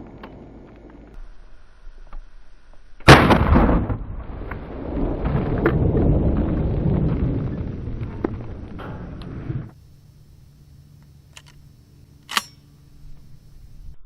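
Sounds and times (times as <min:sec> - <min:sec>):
low rumbling: 0:00.0 - 0:10.5
sharp blast: 0:03.1 - 0:04.4.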